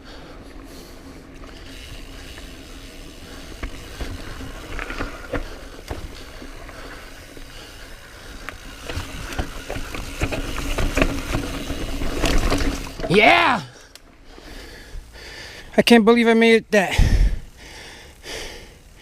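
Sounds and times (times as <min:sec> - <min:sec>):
bike tyre rumble: 0:00.0 - 0:15.8, 0:16.9 - 0:19.0
bike knocks and rattles: 0:03.5 - 0:06.9, 0:08.6 - 0:13.4.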